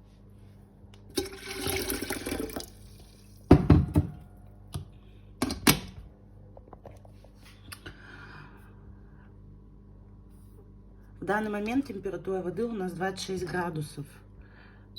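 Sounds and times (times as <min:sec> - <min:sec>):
water running into kettle: 0:01.1 - 0:03.5.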